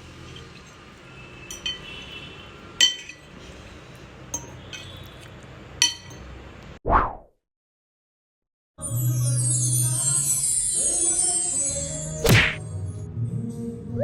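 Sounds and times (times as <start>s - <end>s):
dishes and utensils clinking: 0.2s - 2.2s, 2.8s - 3.6s, 4.3s - 5.0s, 5.8s - 6.3s.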